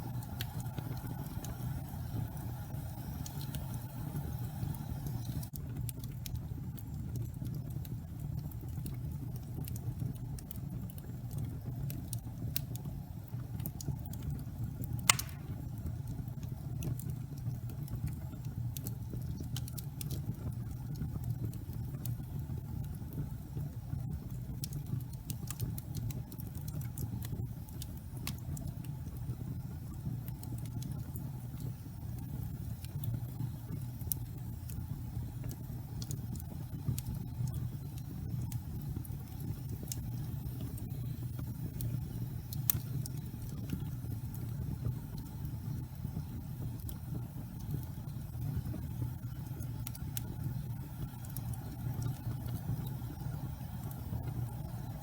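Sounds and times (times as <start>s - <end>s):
fire crackling and snapping: 0.0s - 55.0s
fire rumbling: 0.0s - 55.0s
loud fire pop: 15.1s - 15.8s.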